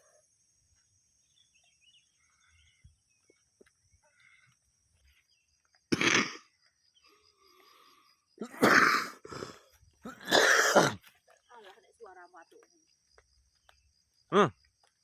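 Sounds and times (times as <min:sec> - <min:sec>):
person coughing: 0:06.0 - 0:06.4, 0:08.4 - 0:11.0.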